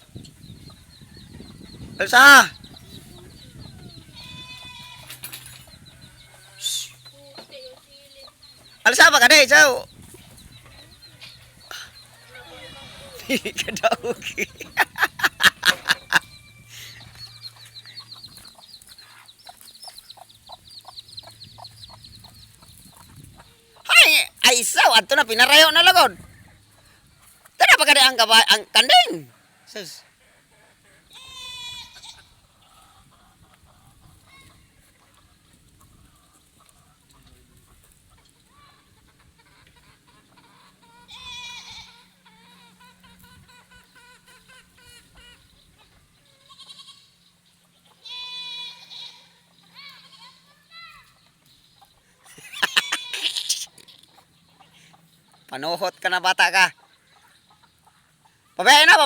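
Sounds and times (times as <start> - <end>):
chickens clucking: 0.0 - 31.3, 31.9 - 48.1, 49.4 - 59.0
goat bleating: 4.1 - 5.1, 31.1 - 32.3, 41.1 - 42.1, 46.4 - 47.1, 48.0 - 50.4, 52.4 - 53.8.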